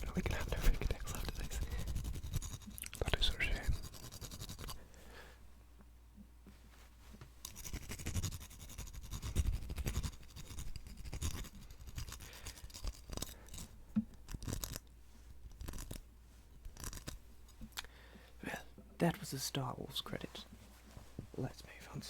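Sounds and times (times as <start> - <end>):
fingertip tapping and scratching: 0.0 - 4.8, 7.2 - 16.0, 16.6 - 17.7.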